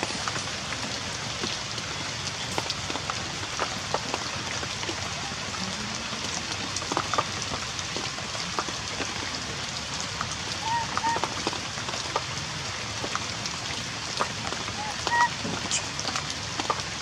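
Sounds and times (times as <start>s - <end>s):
heavy rain falling: 0.0s - 17.0s.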